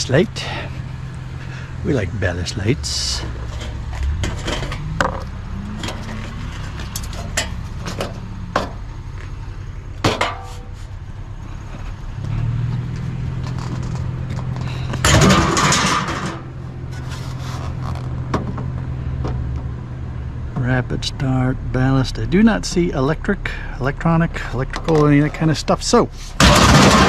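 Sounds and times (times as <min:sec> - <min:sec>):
low engine hum: 0:00.0 - 0:27.0
metal rattling clatter: 0:02.8 - 0:08.8, 0:13.4 - 0:18.6, 0:26.3 - 0:27.0
scrap metal knocking and clanking: 0:02.8 - 0:08.8, 0:10.0 - 0:10.9, 0:13.4 - 0:19.4, 0:26.2 - 0:27.0.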